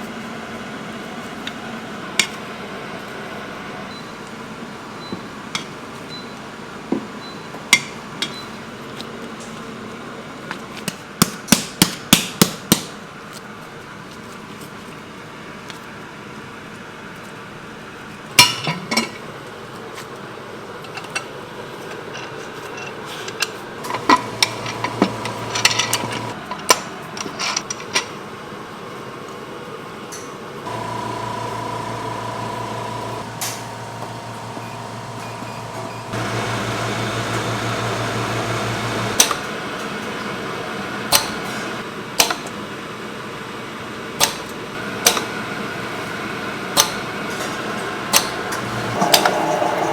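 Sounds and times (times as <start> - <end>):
machine hum: 23.8 - 26.4, 30.7 - 41.8, 44.8 - 49.9.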